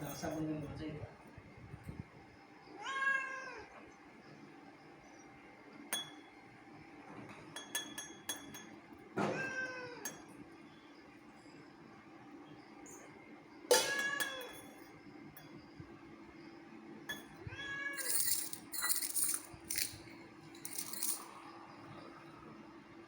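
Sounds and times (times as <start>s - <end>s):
cat meowing: 2.8s - 3.7s, 17.4s - 18.2s.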